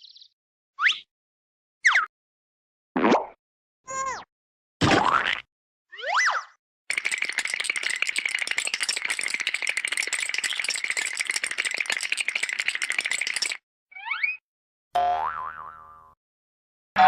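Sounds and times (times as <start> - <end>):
fast rattle of dense clicks: 6.9 - 13.6.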